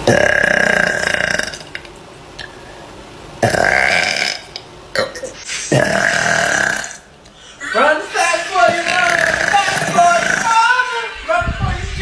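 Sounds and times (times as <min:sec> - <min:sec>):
woman burping: 0:00.0 - 0:01.8, 0:03.4 - 0:07.8, 0:08.7 - 0:10.6.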